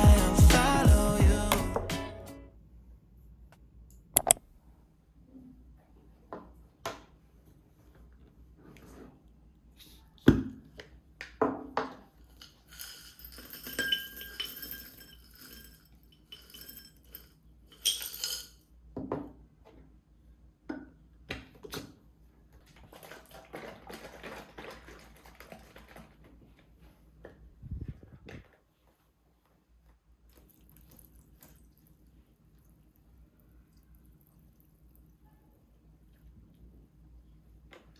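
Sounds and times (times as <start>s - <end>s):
crockery clinking: 12.4s - 18.6s.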